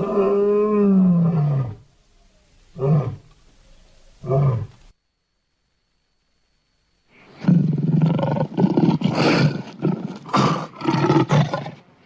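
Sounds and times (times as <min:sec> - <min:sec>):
big cat roaring: 0:07.4 - 0:11.8.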